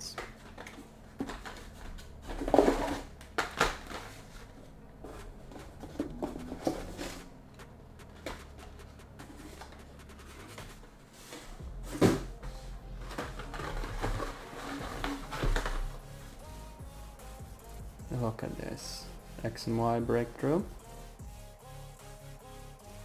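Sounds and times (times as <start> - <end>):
packaging knocks and rustles: 0.0 - 16.6.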